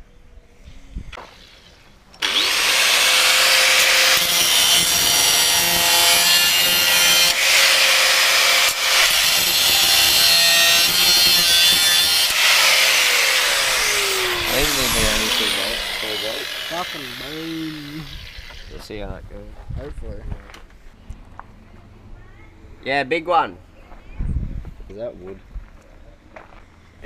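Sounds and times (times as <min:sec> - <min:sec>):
power tool cutting: 0:01.2 - 0:18.8.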